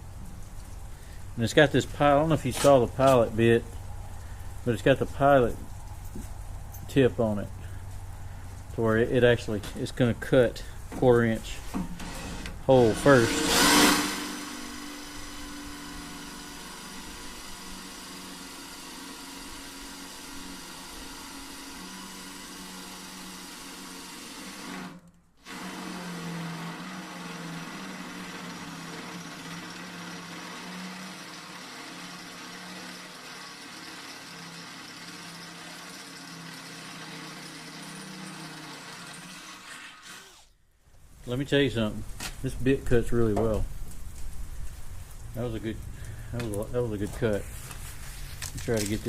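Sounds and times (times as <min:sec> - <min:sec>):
electric drill boring through steel: 0:11.7 - 0:40.6.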